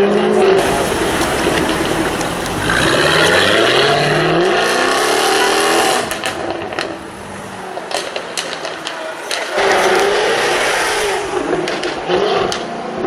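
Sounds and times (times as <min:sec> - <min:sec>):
car engine accelerating hard: 0:00.4 - 0:12.7
sharp exhaust pops: 0:00.6 - 0:10.6.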